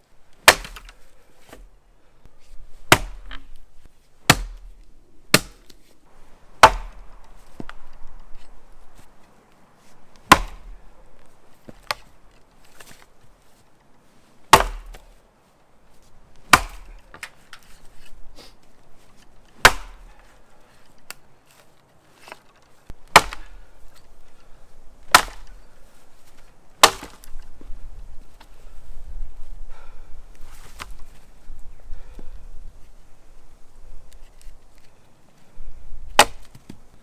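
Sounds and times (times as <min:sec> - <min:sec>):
axe chopping wood: 0:00.4 - 0:01.7, 0:02.8 - 0:03.6, 0:04.3 - 0:05.9, 0:06.5 - 0:09.1, 0:10.2 - 0:10.9, 0:11.6 - 0:13.1, 0:14.5 - 0:15.2, 0:16.4 - 0:17.3, 0:19.6 - 0:20.3, 0:23.0 - 0:23.7, 0:25.1 - 0:25.7, 0:26.8 - 0:27.5, 0:36.1 - 0:36.8.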